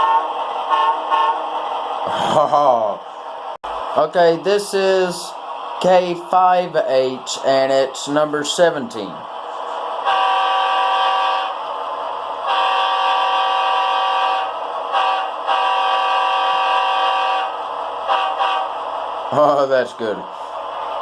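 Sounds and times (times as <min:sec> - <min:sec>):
locomotive air horn chord: 0:00.0 - 0:01.5, 0:10.0 - 0:11.6, 0:12.4 - 0:18.8.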